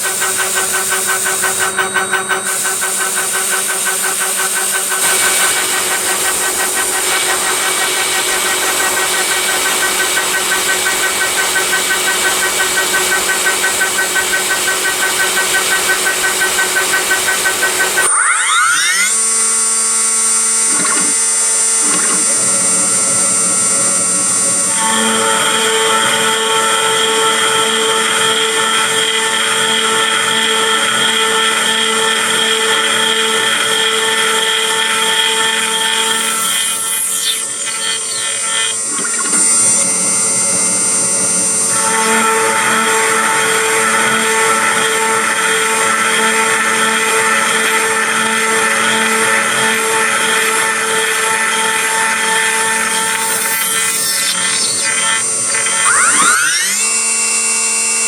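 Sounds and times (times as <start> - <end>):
dense cutting noise: 0.0 - 23.1
spindle whining at high speed: 0.0 - 58.0
high whistling tones sweeping: 55.8 - 57.3.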